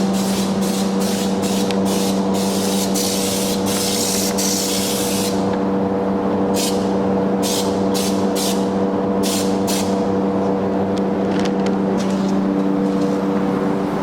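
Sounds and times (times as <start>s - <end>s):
compressed air spraying: 0.0s - 5.5s, 6.5s - 10.1s
steady motor hum: 0.0s - 14.0s.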